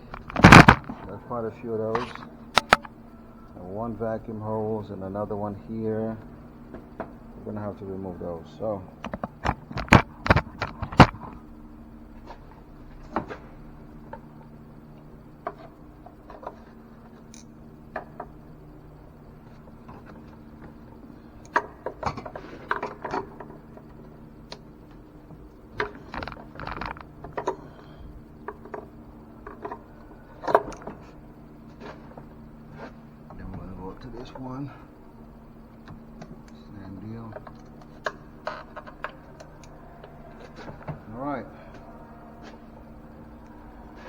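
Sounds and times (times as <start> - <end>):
steady low hum: 0.0 - 44.0
plastic parts clicking and tapping: 0.1 - 1.1, 2.0 - 2.9, 9.0 - 11.3, 25.8 - 27.6.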